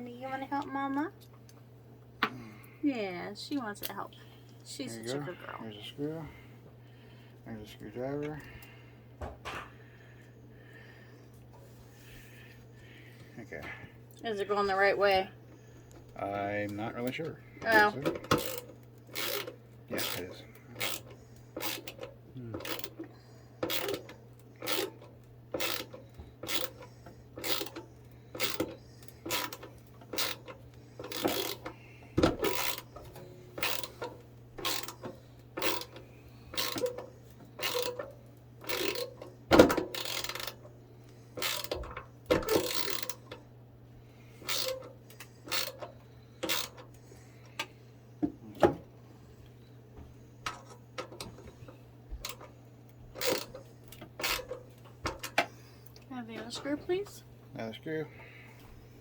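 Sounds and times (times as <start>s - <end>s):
screwdriver turning screw creaks: 17.6s - 40.6s, 41.4s - 43.4s, 44.4s - 47.0s, 53.2s - 54.6s.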